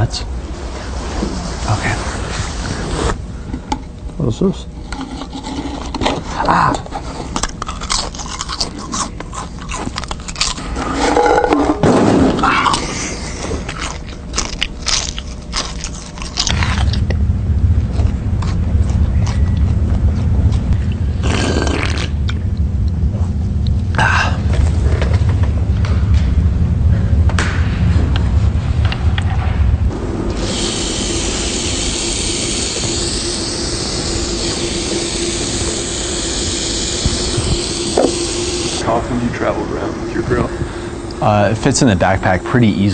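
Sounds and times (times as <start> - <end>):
person chewing crisp food: 7.4 - 10.8, 12.7 - 17.1, 18.0 - 21.0
grill hissing: 10.3 - 22.4, 29.9 - 42.9
steady low rumble: 10.7 - 42.9.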